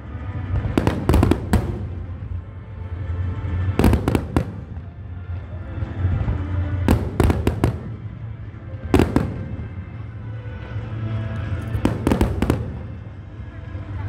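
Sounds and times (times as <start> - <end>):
fireworks bangs: 0.4 - 2.4.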